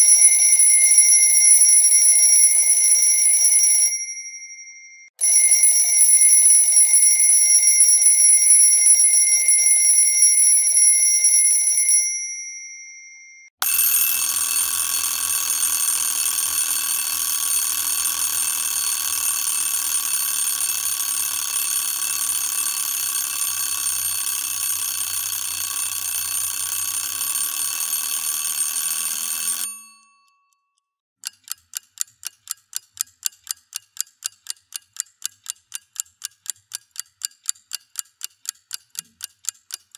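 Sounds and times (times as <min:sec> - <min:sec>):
clock ticking: 0:00.0 - 0:04.0, 0:31.2 - 0:39.9
alarm clock ringing: 0:00.0 - 0:30.4.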